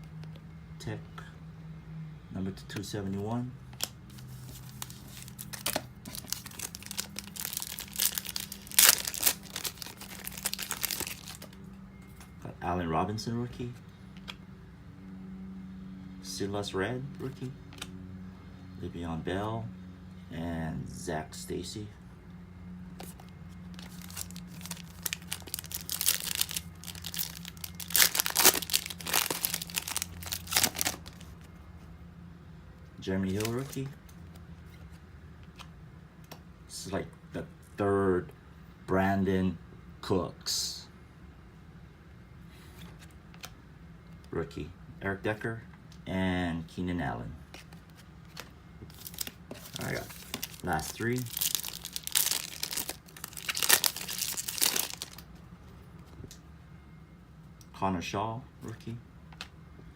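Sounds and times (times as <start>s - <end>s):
faint steady hum: 0.0s - 59.9s
packaging and cards crinkling: 3.8s - 11.6s, 23.0s - 31.5s, 33.3s - 33.9s, 47.6s - 55.3s.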